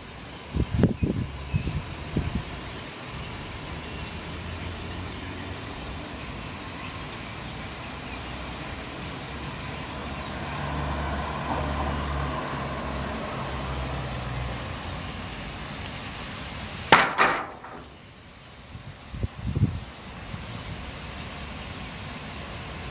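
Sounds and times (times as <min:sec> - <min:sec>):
urban traffic noise: 0:00.0 - 0:22.9
vehicle engine rumble: 0:09.7 - 0:18.2
sharp knocks: 0:16.9 - 0:18.0.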